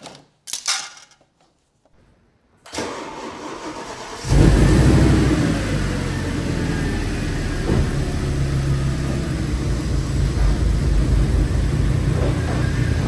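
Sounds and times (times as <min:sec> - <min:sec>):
car engine idling: 0:03.4 - 0:13.0.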